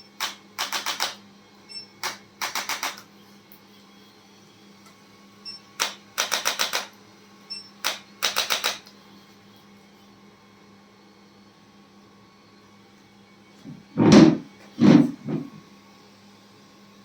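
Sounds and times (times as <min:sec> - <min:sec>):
sharp rapid clicks: 0:00.2 - 0:01.2, 0:02.0 - 0:03.0, 0:05.8 - 0:06.9, 0:07.8 - 0:08.8.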